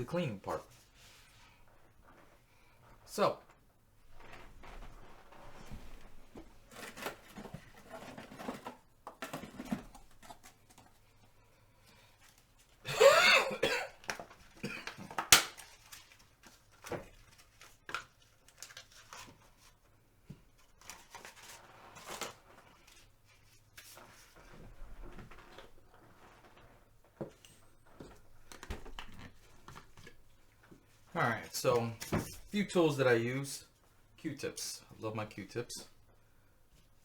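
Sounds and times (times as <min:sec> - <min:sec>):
person coughing: 0:12.9 - 0:14.0, 0:14.6 - 0:15.0.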